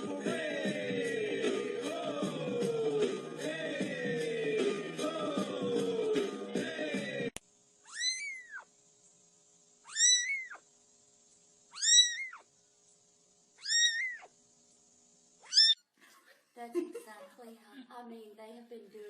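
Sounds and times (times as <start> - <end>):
cat meowing: 7.9 - 8.7, 9.9 - 10.6, 11.7 - 12.4, 13.6 - 14.3, 15.4 - 15.8.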